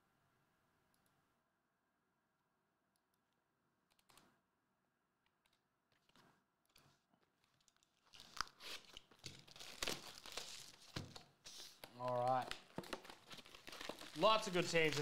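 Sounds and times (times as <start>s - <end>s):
plastic wrapping crinkling and tearing: 7.2s - 15.0s.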